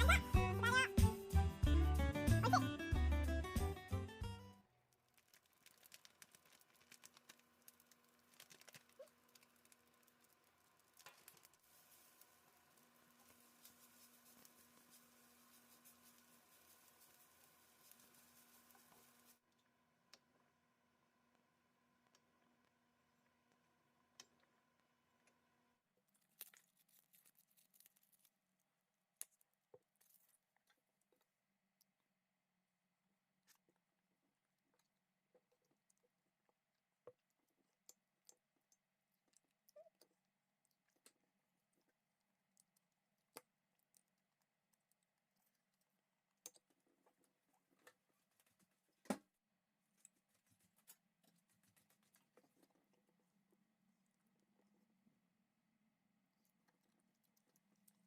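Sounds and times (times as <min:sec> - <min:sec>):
small clicks and taps: 0:05.1 - 0:11.6.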